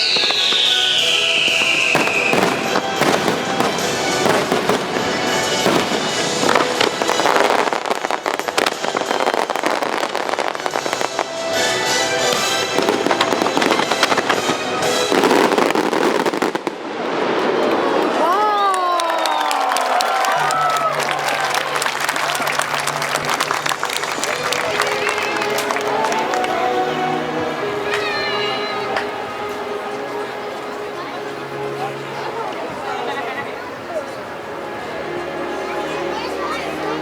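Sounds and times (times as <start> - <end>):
falling whistle: 0.0 - 2.8
orchestral music: 0.0 - 18.7, 20.1 - 37.0
fireworks bursting and crackling: 0.0 - 19.7, 20.4 - 29.8.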